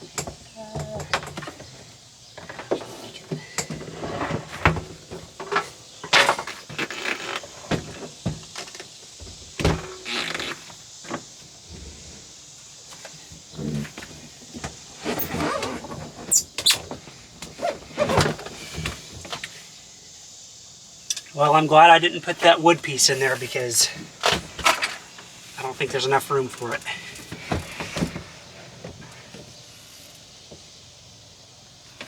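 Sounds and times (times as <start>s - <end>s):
refrigerator bumping and scraping wood: 0.0s - 12.3s, 12.9s - 19.6s, 26.9s - 29.5s
short high squeaks: 15.0s - 16.9s.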